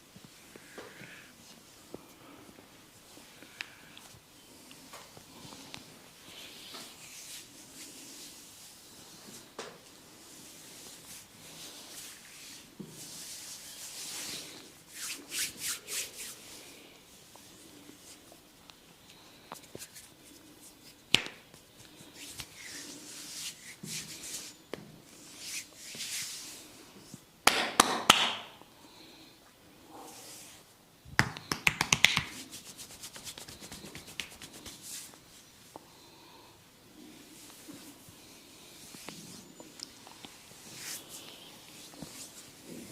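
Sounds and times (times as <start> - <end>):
hands rubbing skin: 10.3 - 16.7, 19.5 - 26.7, 31.2 - 35.3, 38.8 - 42.9
rapid tapping on skin: 31.2 - 34.8.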